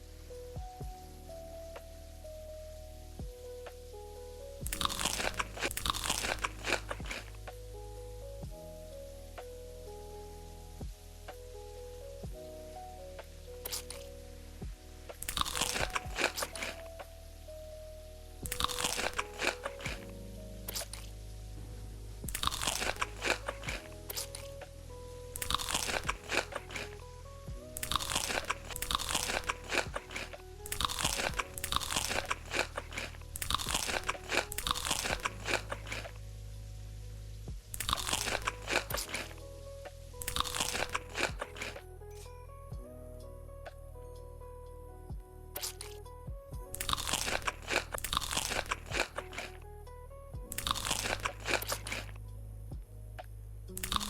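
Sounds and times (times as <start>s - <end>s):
background music: 0.0s - 54.0s
crunchy chewing of crisp food: 4.6s - 7.4s, 13.6s - 14.1s, 15.1s - 17.1s, 18.4s - 21.1s, 22.3s - 24.5s, 25.3s - 36.3s, 37.7s - 39.4s, 40.2s - 41.9s, 45.6s - 46.0s, 46.7s - 49.6s, 50.5s - 52.2s, 53.7s - 54.0s.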